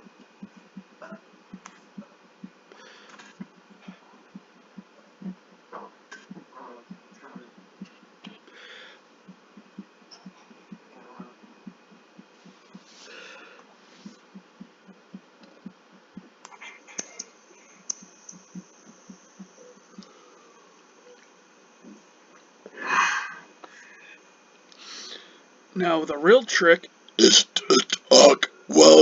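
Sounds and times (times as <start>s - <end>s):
hissy breaths: 2.7s - 4.3s, 8.3s - 11.3s, 12.2s - 14.5s, 22.7s - 25.6s.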